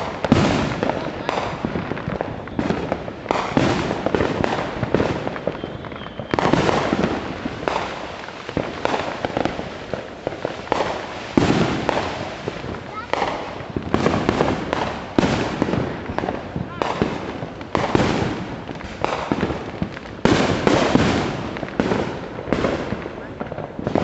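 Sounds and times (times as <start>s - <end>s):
fireworks and firecrackers crackling: 0.0s - 24.0s
heavy firework blasts: 0.0s - 24.0s.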